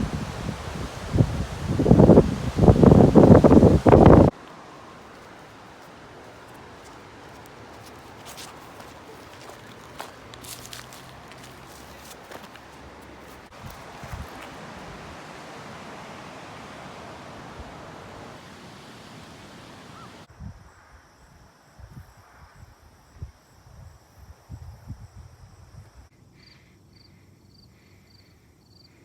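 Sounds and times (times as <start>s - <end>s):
steady rushing noise: 0.0s - 4.4s.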